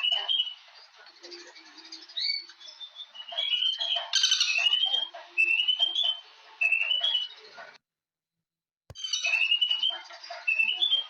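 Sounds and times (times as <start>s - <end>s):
bird chirping: 0.0s - 7.7s, 8.9s - 11.0s.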